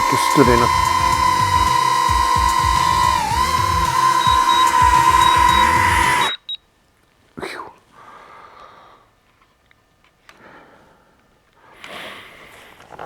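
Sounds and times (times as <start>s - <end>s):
drone motors whining: 0.0s - 6.4s
high beep: 4.2s - 6.6s.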